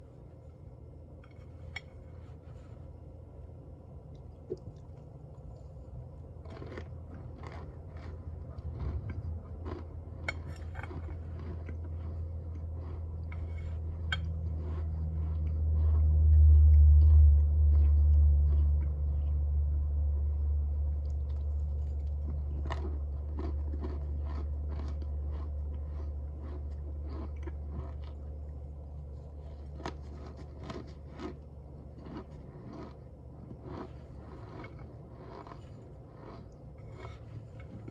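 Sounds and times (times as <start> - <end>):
low rumble: 2.9 - 23.4
cornstarch crunching and squeaking: 22.3 - 28.1, 29.6 - 31.4.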